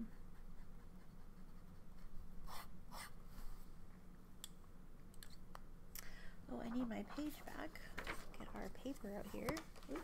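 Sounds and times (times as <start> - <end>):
pen nib scratching paper: 0.0 - 3.1
faint steady hum: 0.0 - 10.0.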